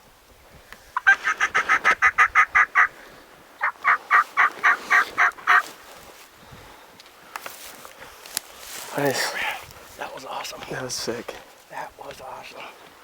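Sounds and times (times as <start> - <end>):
wild turkey yelping: 0.9 - 6.0.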